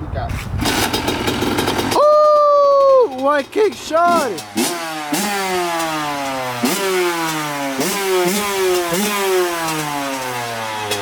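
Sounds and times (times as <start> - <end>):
dirt bike engine revving: 0.6 - 11.0.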